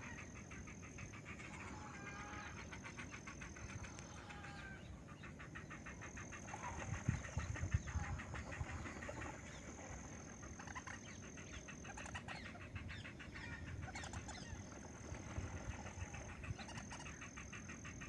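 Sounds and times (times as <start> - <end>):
birds calling: 0.0 - 18.0.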